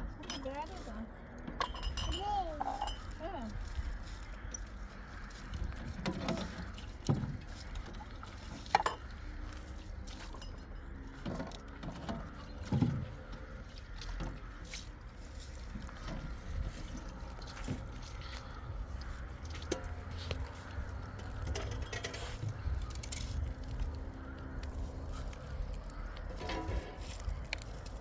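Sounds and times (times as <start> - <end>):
knocks and clinks: 1.4 - 3.2.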